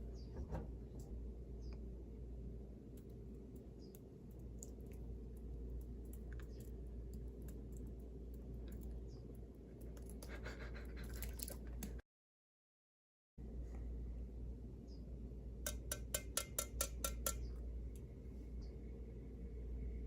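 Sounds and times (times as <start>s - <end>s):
steady low hum: 0.0s - 12.0s, 13.4s - 20.0s
small clicks and crackles: 2.9s - 10.4s
chewing and mouth sounds: 9.8s - 12.0s.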